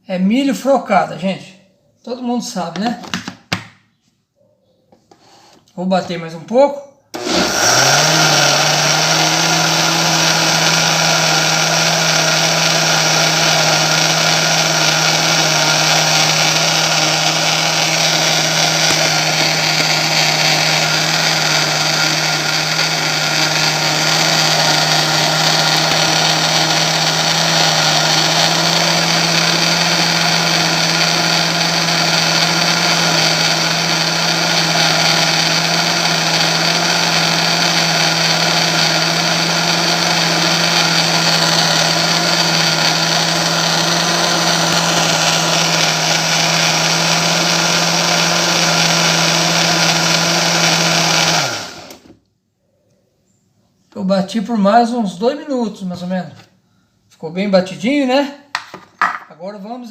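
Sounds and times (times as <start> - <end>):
blender motor running: 7.1 - 52.2.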